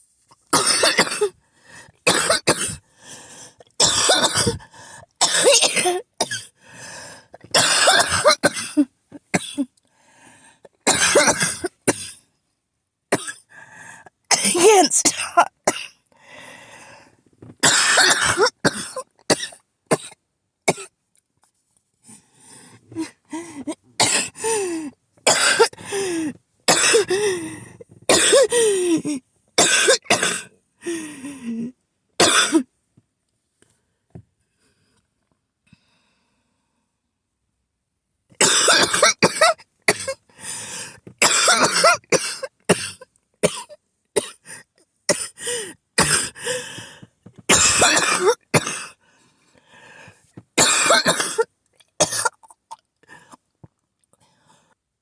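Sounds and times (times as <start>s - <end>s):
person coughing harshly: 0.6s - 1.3s, 2.1s - 2.8s, 3.8s - 4.6s, 5.2s - 6.5s, 7.4s - 9.7s, 10.9s - 12.2s, 13.1s - 13.5s, 14.3s - 16.0s, 17.6s - 20.9s, 23.0s - 24.7s, 25.3s - 27.4s, 28.1s - 30.5s, 32.2s - 32.7s, 38.4s - 40.2s, 41.2s - 44.5s, 45.1s - 46.8s, 47.5s - 49.0s, 50.6s - 52.6s.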